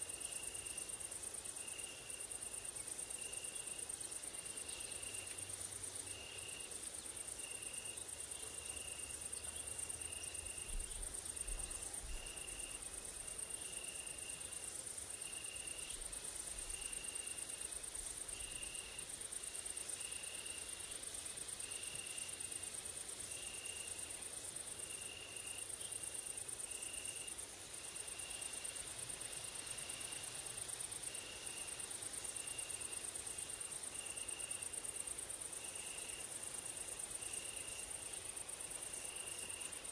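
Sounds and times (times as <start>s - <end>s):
lower insect chirp: 0.0s - 39.9s.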